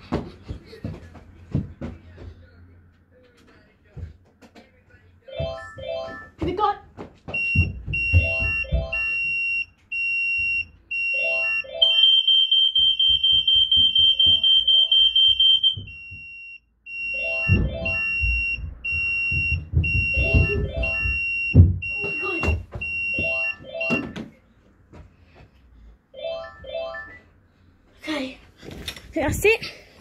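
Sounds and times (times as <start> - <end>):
knocks and thuds: 6.4 - 9.0, 17.4 - 24.3
smoke alarm beeping: 7.4 - 24.2.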